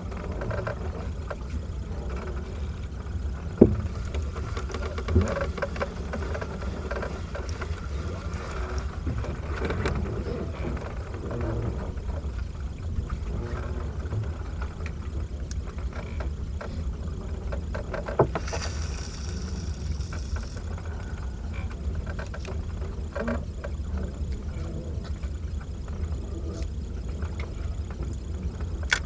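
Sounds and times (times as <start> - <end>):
boat engine rumbling: 0.0 - 29.0
hiss: 18.3 - 20.8.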